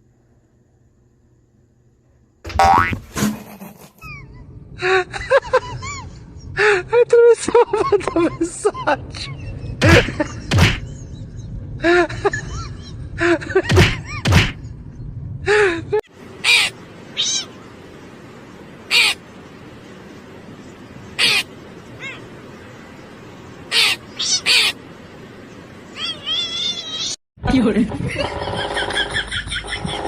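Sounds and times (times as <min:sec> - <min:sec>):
steady hiss: 0:16.1 - 0:27.0
short animal calls: 0:16.4 - 0:17.6, 0:18.9 - 0:19.2, 0:21.2 - 0:22.3, 0:23.7 - 0:24.8.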